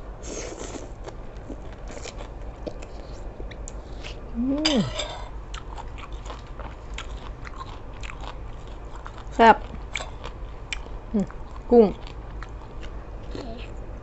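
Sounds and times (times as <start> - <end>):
short vocal hum: 4.1 - 5.3
person chewing with wet mouth clicks: 5.5 - 13.4.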